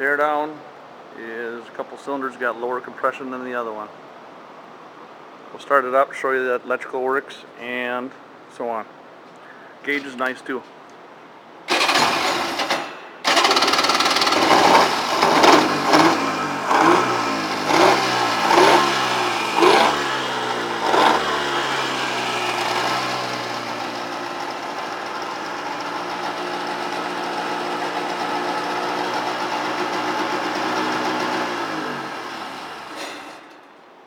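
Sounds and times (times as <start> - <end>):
jet ski engine starting and revving: 11.7 - 33.4.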